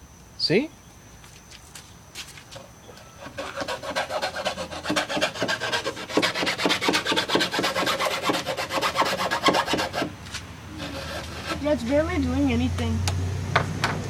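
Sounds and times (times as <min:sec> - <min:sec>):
handsaw rasping through wood: 0:03.2 - 0:12.0.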